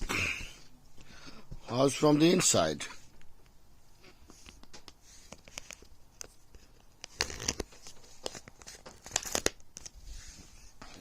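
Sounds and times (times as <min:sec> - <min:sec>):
small clicks and rustles: 0:03.2 - 0:11.0.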